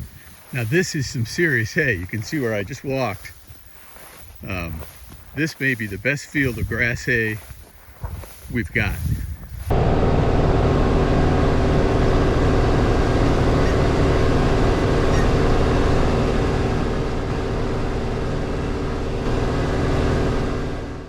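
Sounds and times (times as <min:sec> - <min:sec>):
tractor engine running: 0:08.5 - 0:21.0.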